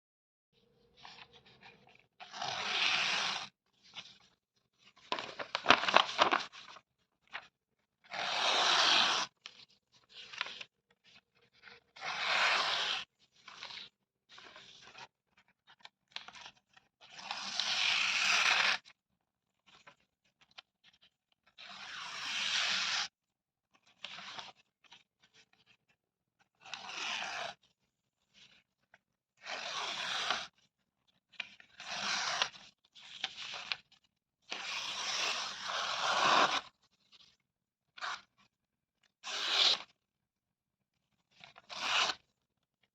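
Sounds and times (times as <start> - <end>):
paper rustling: 5.0 - 7.4
paper tearing: 5.1 - 6.5, 8.1 - 9.3.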